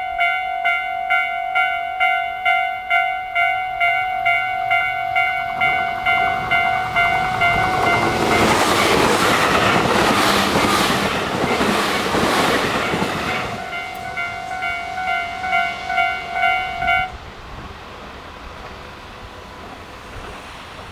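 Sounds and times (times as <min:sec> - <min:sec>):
level-crossing warning bells: 0:00.0 - 0:17.3
train wheels clacking over rail joints: 0:05.6 - 0:17.8.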